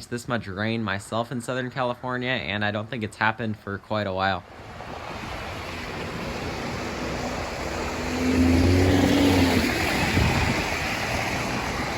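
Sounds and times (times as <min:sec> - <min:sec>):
creek rushing: 0:04.4 - 0:11.9.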